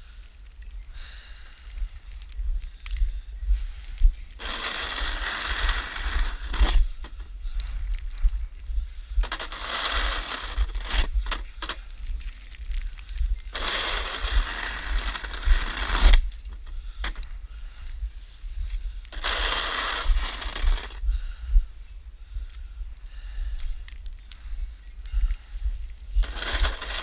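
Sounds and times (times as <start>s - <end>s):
steady low rumble: 0.0s - 27.0s
snow shovel scraping snow: 4.4s - 6.8s, 9.2s - 11.8s, 13.5s - 16.2s, 19.1s - 21.0s, 26.2s - 27.0s.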